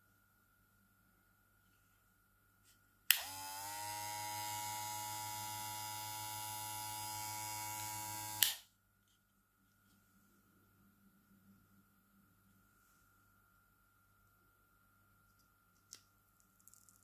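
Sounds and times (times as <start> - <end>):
hair clipper buzzing: 3.1 - 8.6.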